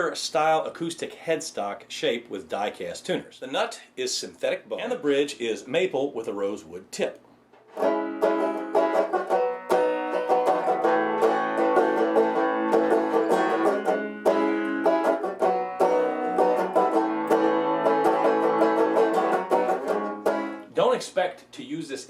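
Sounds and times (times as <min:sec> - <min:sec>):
banjo picked notes: 0:07.7 - 0:20.8.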